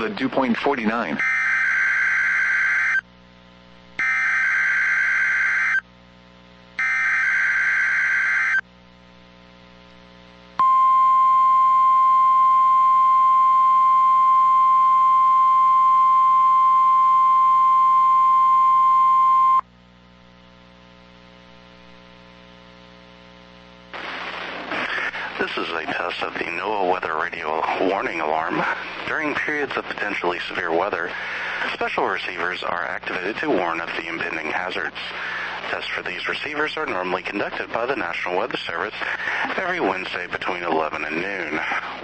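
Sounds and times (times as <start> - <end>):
faint receiver hum: 0.0 - 42.0
loud steady alarm tone: 1.2 - 3.0, 4.0 - 5.8, 6.8 - 8.6.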